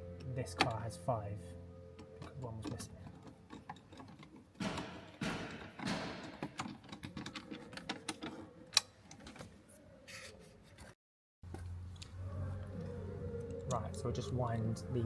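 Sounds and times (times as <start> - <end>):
screws and plastic trim handled: 2.0 - 10.3.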